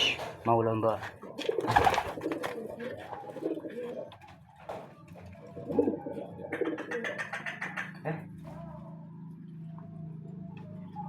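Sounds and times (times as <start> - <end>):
pigeons cooing: 1.0 - 8.8.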